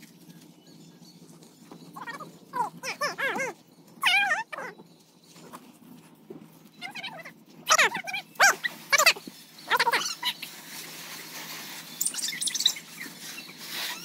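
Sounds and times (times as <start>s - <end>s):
faint high chirping: 6.6s - 14.0s.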